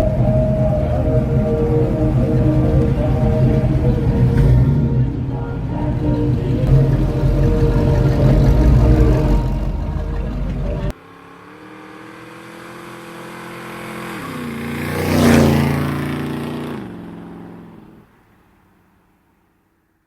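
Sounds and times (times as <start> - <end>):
car engine running loudly: 0.0 - 18.0
car driving past: 0.0 - 19.1.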